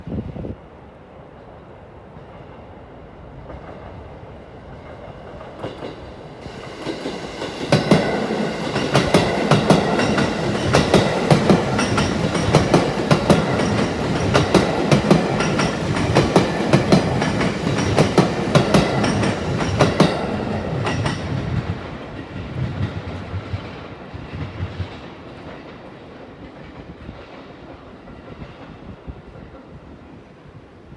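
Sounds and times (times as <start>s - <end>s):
electric train passing slowly: 0.5s - 30.9s
wheels clicking over rail joints: 5.3s - 27.5s.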